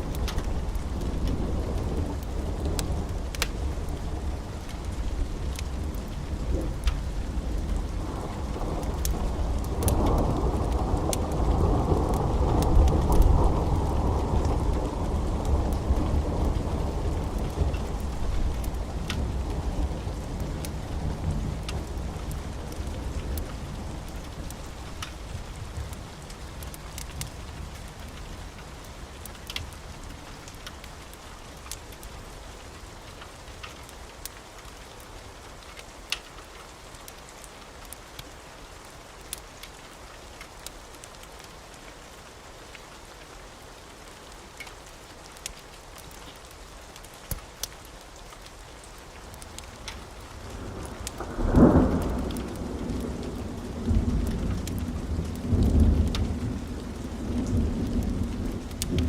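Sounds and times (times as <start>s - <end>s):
sharp crackles: 0.0s - 42.2s, 44.2s - 59.0s
rain hiss: 0.0s - 59.0s
rumbling thunder: 50.4s - 59.0s.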